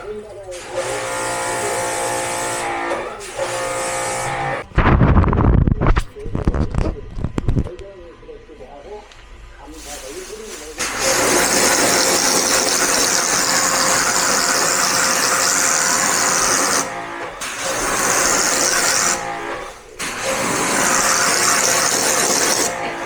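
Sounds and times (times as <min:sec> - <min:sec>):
machine running with loud hiss: 0:00.5 - 0:04.7, 0:09.7 - 0:23.0.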